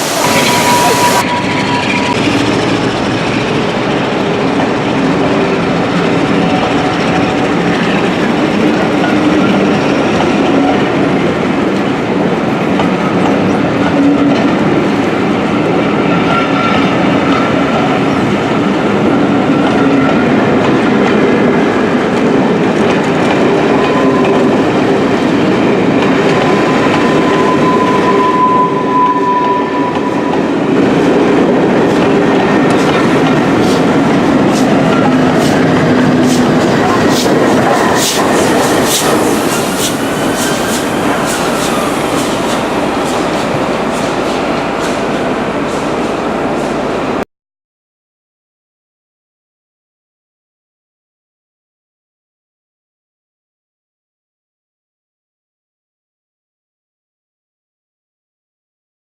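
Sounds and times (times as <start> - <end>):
thin high squeal: 0.0 - 2.4
train rolling on rails: 0.0 - 47.2.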